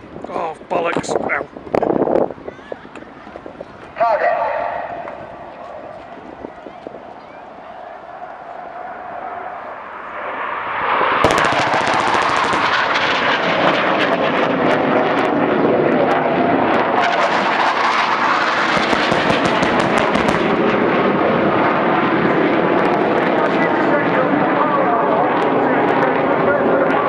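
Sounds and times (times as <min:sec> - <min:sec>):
jet engine roar: 0:00.0 - 0:27.0
explosions cracking and banging: 0:11.2 - 0:14.3, 0:17.0 - 0:20.8.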